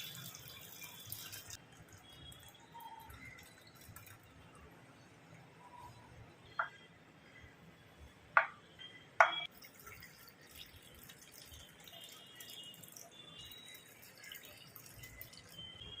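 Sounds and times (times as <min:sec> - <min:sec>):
water drops falling: 0:09.2 - 0:15.9.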